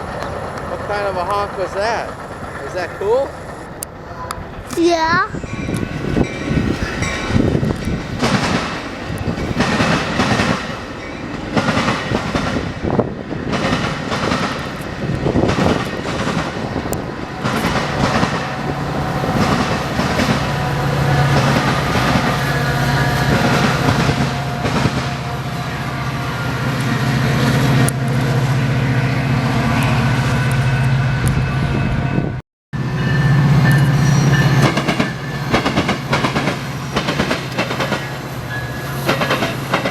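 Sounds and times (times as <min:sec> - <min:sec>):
train wheels clacking: 0:00.0 - 0:25.6, 0:33.1 - 0:39.9.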